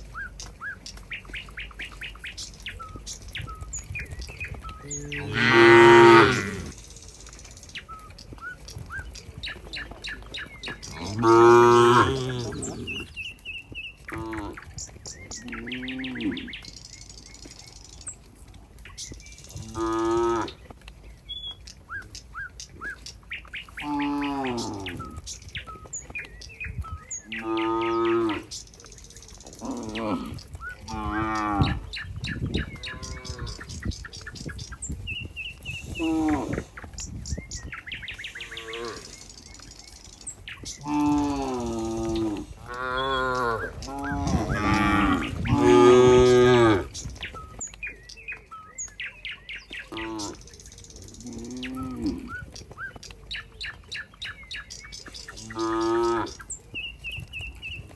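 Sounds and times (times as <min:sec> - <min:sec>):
small birds chirping: 0:00.0 - 0:57.9
cows mooing: 0:04.7 - 0:06.8, 0:10.7 - 0:13.1, 0:19.6 - 0:20.6, 0:23.8 - 0:25.2, 0:27.3 - 0:28.5, 0:29.6 - 0:32.0, 0:32.6 - 0:33.8, 0:35.8 - 0:36.8, 0:38.4 - 0:39.3, 0:40.7 - 0:47.0, 0:51.2 - 0:52.5, 0:55.4 - 0:56.5.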